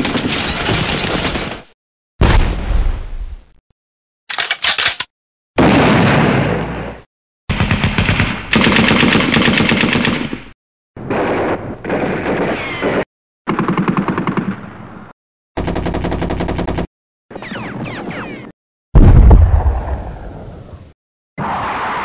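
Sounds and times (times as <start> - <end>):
machine-gun fire bursts: 7.5 - 10.3.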